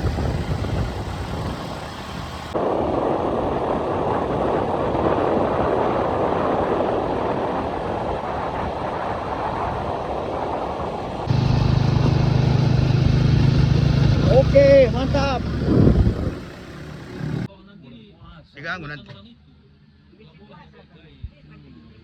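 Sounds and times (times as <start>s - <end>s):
motorcycle engine running: 0.0s - 2.6s, 8.7s - 17.5s
wind noise: 0.0s - 17.5s.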